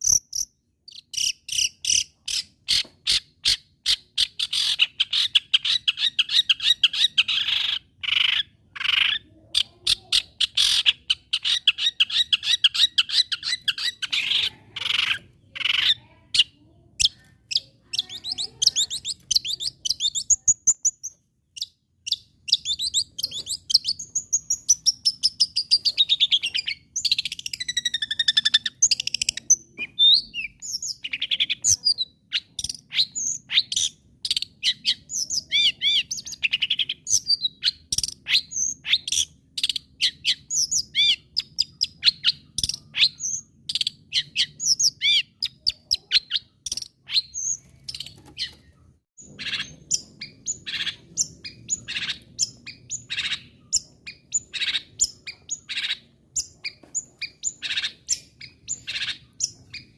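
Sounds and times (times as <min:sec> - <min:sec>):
bird singing chips and whistles: 0:17.0 - 0:48.6.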